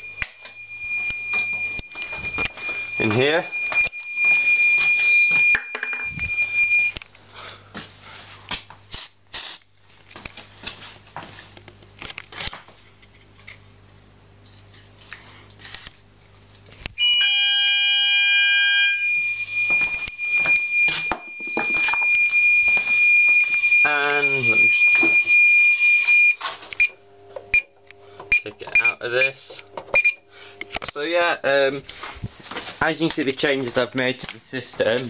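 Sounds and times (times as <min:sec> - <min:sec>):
fire alarm high-pitched tone: 0:00.0 - 0:07.0, 0:17.0 - 0:27.7, 0:28.3 - 0:30.5.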